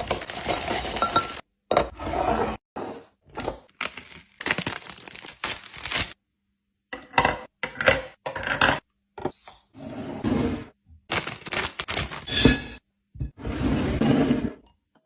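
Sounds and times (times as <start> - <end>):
packaging crinkling and tearing: 3.7 - 6.2, 11.1 - 12.3.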